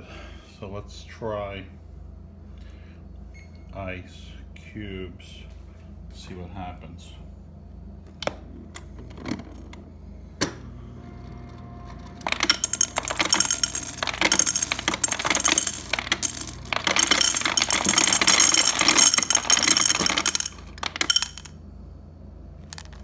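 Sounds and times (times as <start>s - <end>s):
ice cubes clattering out of chute: 11.9s - 21.5s, 22.6s - 23.0s
dispenser clicks: 12.1s - 21.5s.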